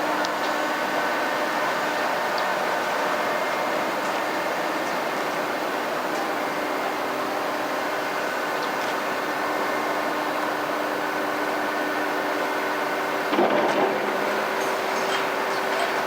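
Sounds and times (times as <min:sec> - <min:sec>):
excavator diesel engine running: 0:09.0 - 0:16.0.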